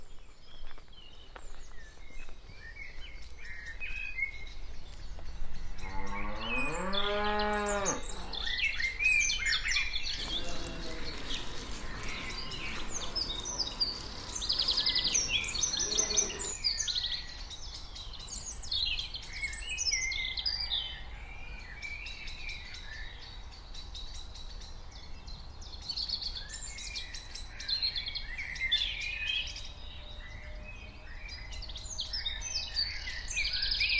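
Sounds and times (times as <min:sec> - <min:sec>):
small birds chirping: 0:00.0 - 0:20.1
cow mooing: 0:05.8 - 0:08.6, 0:10.2 - 0:13.6, 0:14.7 - 0:16.6.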